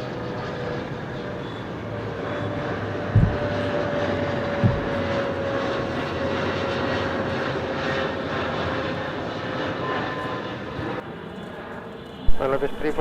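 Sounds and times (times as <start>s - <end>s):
airliner engines whining: 0.0s - 13.0s
brief low thump: 3.2s - 3.6s, 4.6s - 5.0s.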